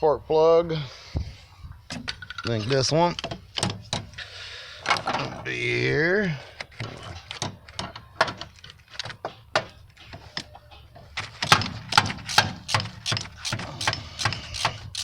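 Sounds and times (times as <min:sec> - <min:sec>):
ratchet clicking: 0:12.3 - 0:15.0.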